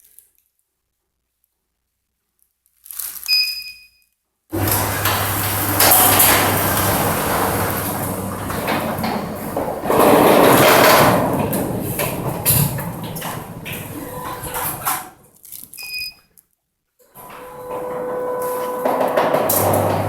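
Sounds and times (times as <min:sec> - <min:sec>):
garage door opener motor hum: 0:04.5 - 0:15.2, 0:17.0 - 0:20.0
garage door rumbling and rattling: 0:04.5 - 0:15.3, 0:17.1 - 0:20.0.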